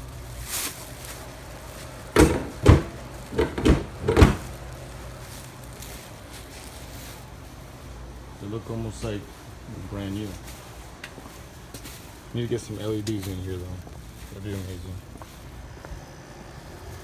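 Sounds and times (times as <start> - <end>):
dull knocks: 2.2 - 4.6.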